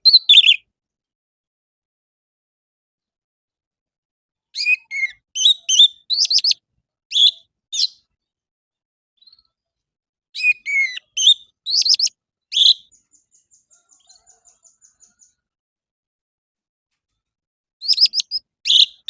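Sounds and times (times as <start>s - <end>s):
thrush whistled song: 0.0s - 0.6s, 4.6s - 8.0s, 10.4s - 13.0s, 17.8s - 19.0s.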